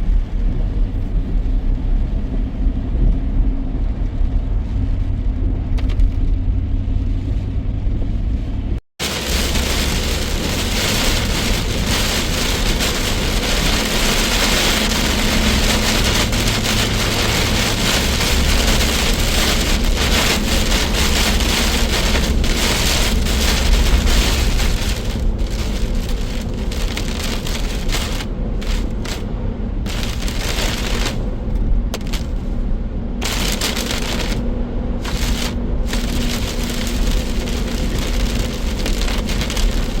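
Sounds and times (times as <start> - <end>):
low rumble: 0.0 - 40.0
torrential rain: 9.0 - 32.6, 33.2 - 40.0.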